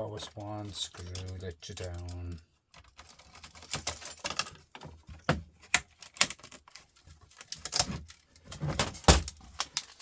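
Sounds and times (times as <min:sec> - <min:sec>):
clicks and knocks of laptop parts: 0:07.4 - 0:10.0.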